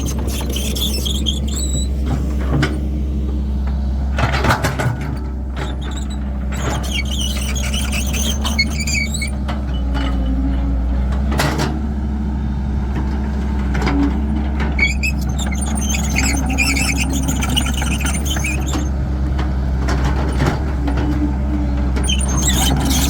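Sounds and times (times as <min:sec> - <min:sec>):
metal squeaking and squealing: 0:00.0 - 0:02.8, 0:04.6 - 0:10.4, 0:14.7 - 0:19.1, 0:20.0 - 0:23.0
excavator diesel engine running: 0:00.0 - 0:23.0.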